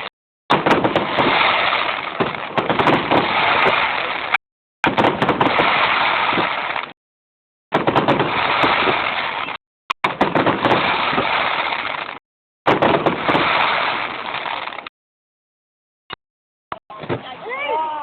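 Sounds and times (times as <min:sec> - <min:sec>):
fireworks bangs and crackles: 0:00.0 - 0:07.0, 0:07.7 - 0:14.9.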